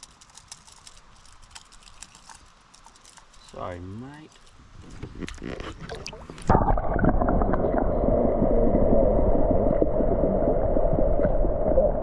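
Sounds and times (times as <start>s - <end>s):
muffled underwater creek rush: 4.6s - 12.0s.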